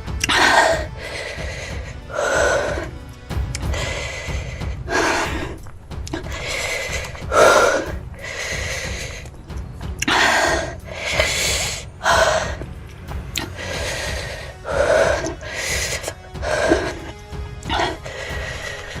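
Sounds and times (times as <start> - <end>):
person gasping and huffing: 0.0 - 19.0.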